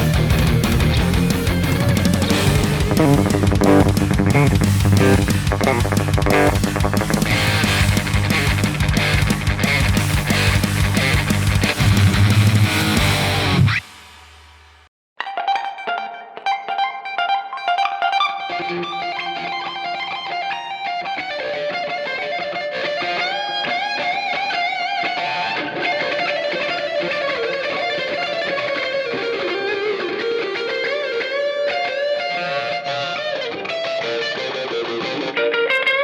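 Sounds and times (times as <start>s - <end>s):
distorted electric guitar: 0.0s - 36.0s.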